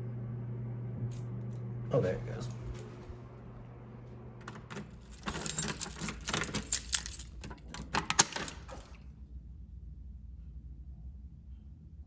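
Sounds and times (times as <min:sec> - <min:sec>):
low hum: 0:00.0 - 0:12.0
metallic clicking and jangling: 0:04.8 - 0:09.0.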